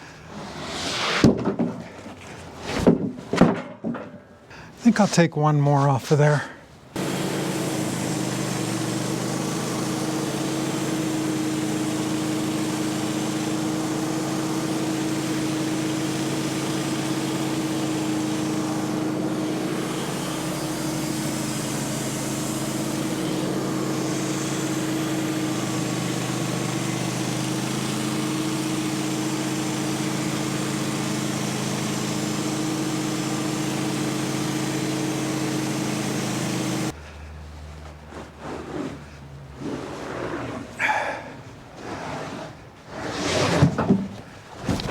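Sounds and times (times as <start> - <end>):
sawmill engine running: 4.8 - 37.0
saw blade cutting log: 7.0 - 37.0.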